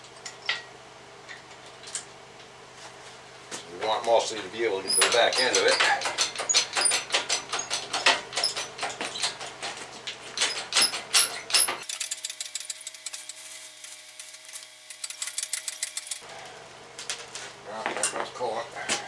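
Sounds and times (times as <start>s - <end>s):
metal tools clinking and rattling: 3.9s - 16.2s.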